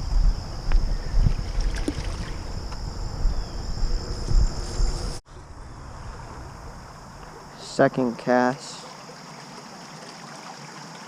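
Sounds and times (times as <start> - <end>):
microphone handling noise: 0.0 - 5.2
wind buffeting microphone: 0.0 - 7.4
water flowing in creek: 1.3 - 2.5, 6.0 - 11.0.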